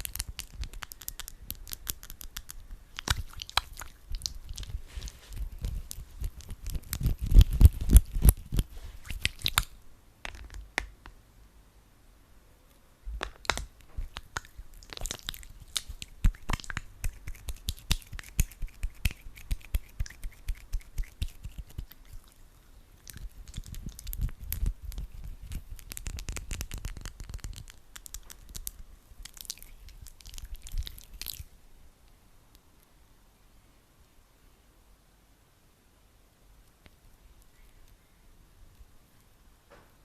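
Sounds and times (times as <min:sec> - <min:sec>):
hands rubbing wet gel: 0:00.0 - 0:10.9, 0:13.3 - 0:31.5.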